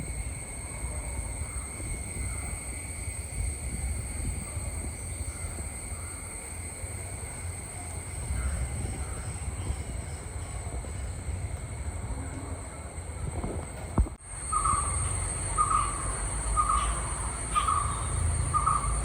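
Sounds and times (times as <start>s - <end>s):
wind buffeting microphone: 0.0s - 6.1s, 8.0s - 19.0s
steady high hum: 6.6s - 19.0s
distant bird calls: 14.3s - 19.0s.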